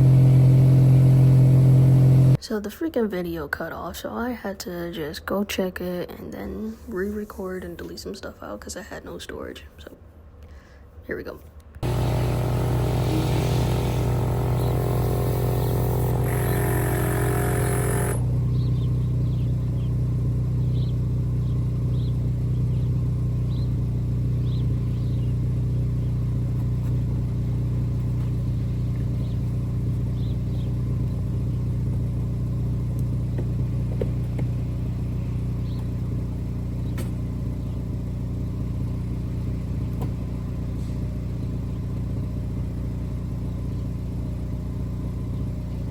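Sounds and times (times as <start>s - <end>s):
car engine humming: 0.0s - 2.4s, 11.8s - 45.9s.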